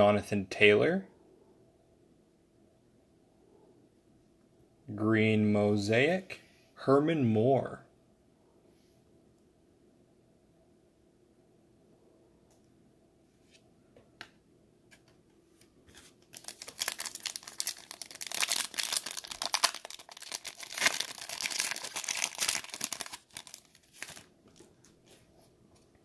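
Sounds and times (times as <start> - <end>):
foil wrapper tearing and crinkling: 15.9 - 25.1.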